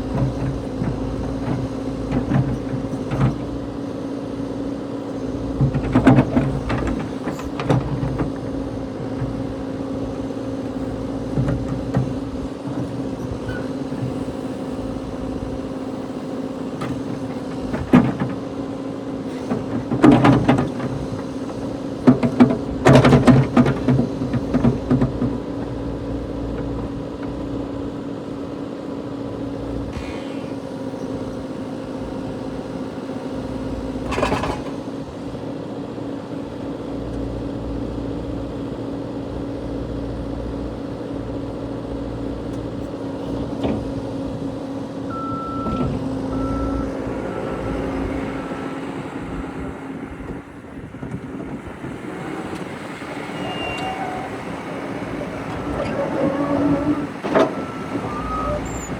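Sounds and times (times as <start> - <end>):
diesel engine running: 0.0 - 58.9
backup alarm beeping: 45.1 - 47.5.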